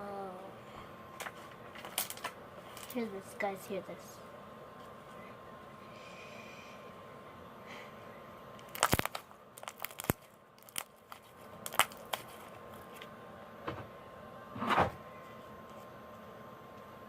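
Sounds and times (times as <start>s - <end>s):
slime popping and crackling: 8.6s - 12.4s.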